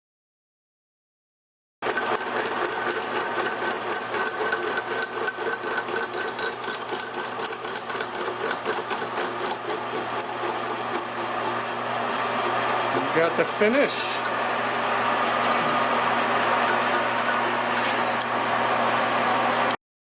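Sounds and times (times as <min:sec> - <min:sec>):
hole saw cutting steel: 0:01.8 - 0:18.9.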